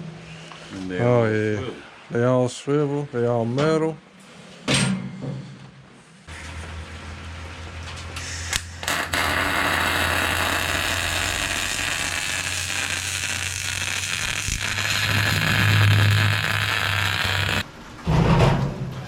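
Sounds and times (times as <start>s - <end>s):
low electrical hum: 5.9s - 18.0s
crackling hiss: 8.3s - 17.6s.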